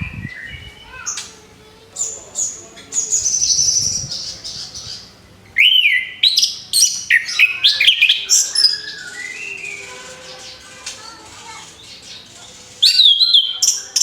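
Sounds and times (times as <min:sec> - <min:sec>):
thrush singing: 0:00.0 - 0:14.0.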